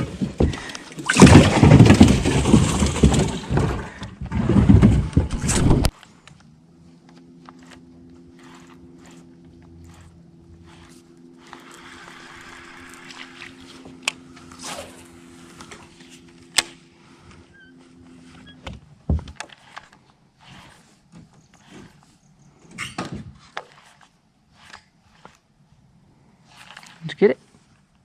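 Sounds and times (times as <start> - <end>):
small motor humming: 5.9 - 18.7
knocks and clicks of handling: 18.6 - 20.0.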